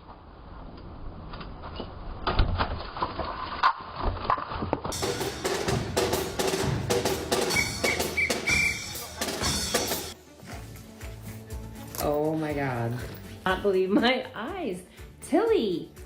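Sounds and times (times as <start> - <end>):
drum-like knocking and clattering: 4.9 - 10.2
music: 4.9 - 16.0.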